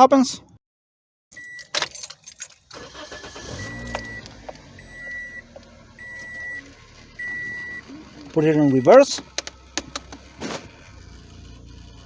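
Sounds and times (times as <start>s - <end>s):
dashboard warning chime: 1.4s - 2.2s, 2.8s - 9.2s
car engine starting and idling: 1.8s - 12.0s.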